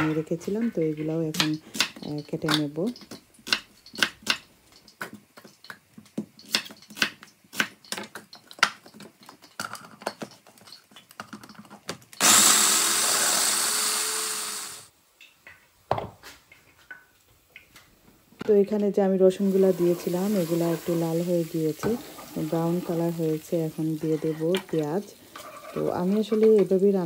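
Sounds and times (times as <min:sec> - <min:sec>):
food processor motor: 0:12.2 - 0:14.9.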